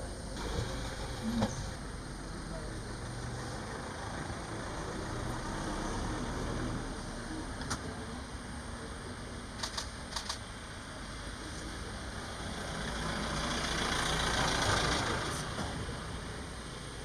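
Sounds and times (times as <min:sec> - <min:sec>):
vehicle engine idling: 0:00.0 - 0:17.0
sharp clicks: 0:09.6 - 0:10.4.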